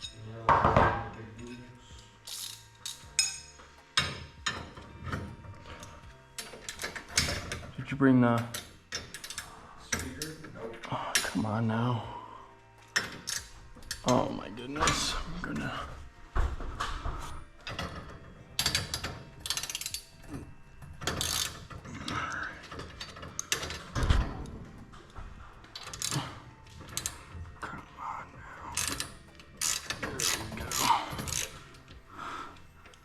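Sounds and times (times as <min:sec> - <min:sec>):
ratchet clicking: 0:02.2 - 0:04.7, 0:08.6 - 0:10.2, 0:13.0 - 0:14.1, 0:18.6 - 0:20.1, 0:21.0 - 0:21.8, 0:25.7 - 0:26.3, 0:28.7 - 0:31.9
metal rattling and clanking: 0:02.3 - 0:11.6, 0:12.9 - 0:27.7, 0:28.7 - 0:32.0.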